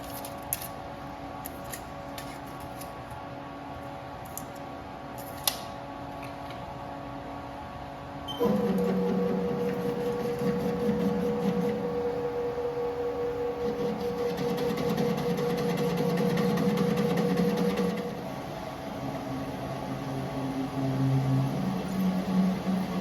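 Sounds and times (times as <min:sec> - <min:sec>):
metal lathe running: 0:08.4 - 0:23.0.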